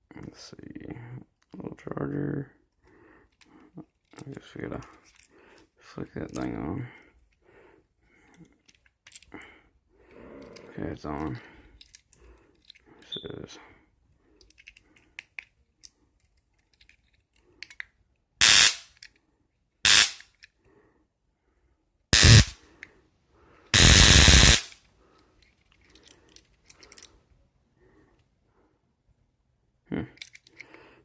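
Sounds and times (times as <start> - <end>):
stun gun crackling zaps: 18.4 - 18.9, 19.9 - 20.3, 22.2 - 22.6, 23.8 - 24.8.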